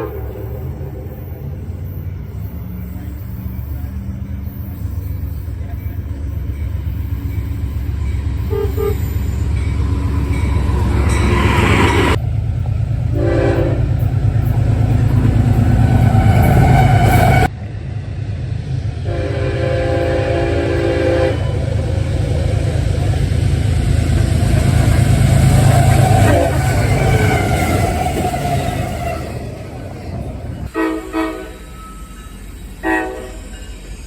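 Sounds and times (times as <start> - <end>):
train horn blasts: 0.0 - 1.2, 8.4 - 9.3, 13.0 - 14.6, 15.5 - 17.5, 19.0 - 22.0, 25.8 - 29.6, 30.6 - 32.2, 32.8 - 33.6
trains rumbling past: 0.0 - 34.0.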